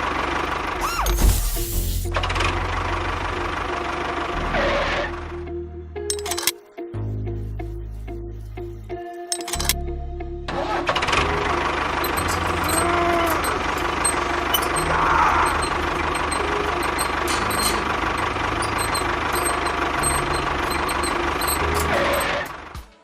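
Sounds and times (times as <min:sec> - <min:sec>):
miniature vehicle engine running: 0:10.6 - 0:22.8
brief squeaks: 0:12.0 - 0:22.6.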